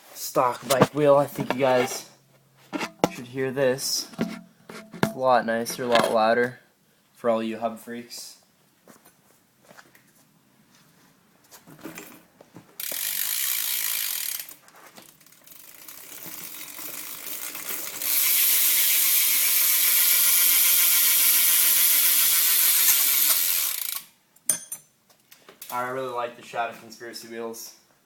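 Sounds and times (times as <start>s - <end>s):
bicycle hub ratcheting buzz: 12.8s - 24.1s.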